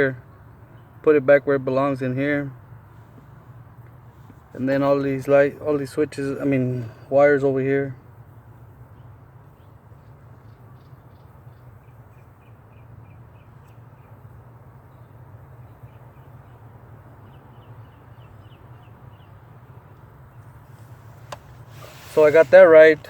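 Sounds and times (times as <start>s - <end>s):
bird chirping: 0.3s - 1.0s, 8.9s - 23.0s.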